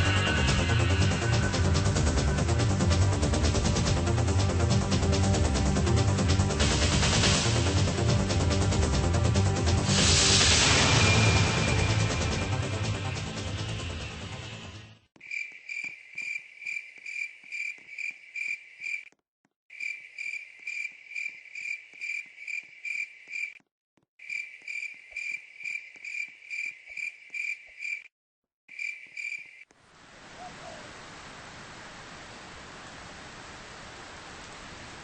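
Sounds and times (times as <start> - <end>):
cricket chirping: 15.2 - 19.1, 19.7 - 23.6, 24.2 - 28.1, 28.7 - 29.6.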